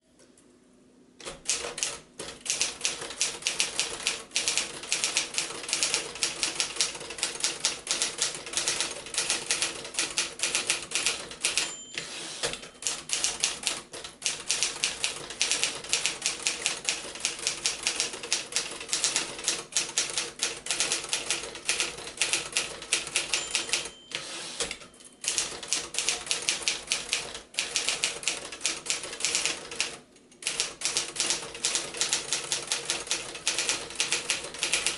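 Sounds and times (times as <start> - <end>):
manual typewriter typing: 1.2 - 34.9
typewriter bell ringing: 10.6 - 13.3, 23.0 - 25.6.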